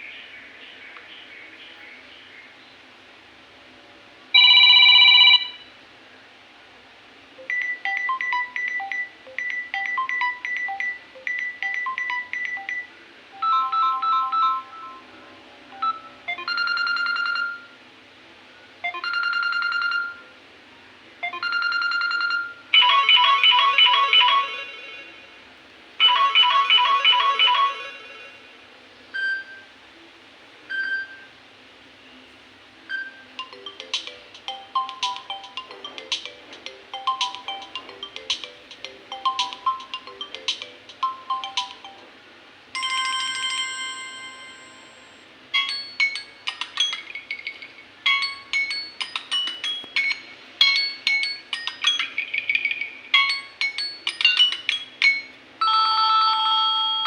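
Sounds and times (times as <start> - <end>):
electronic ringtone melodies: 4.4 - 5.6, 7.4 - 17.8, 18.8 - 20.3, 21.2 - 25.2, 26.0 - 28.4, 32.9 - 42.1, 42.8 - 57.0.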